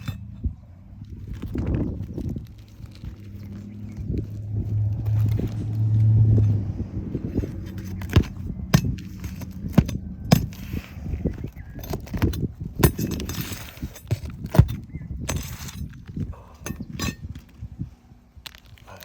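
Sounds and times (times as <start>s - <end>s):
low hum: 0.0s - 13.4s.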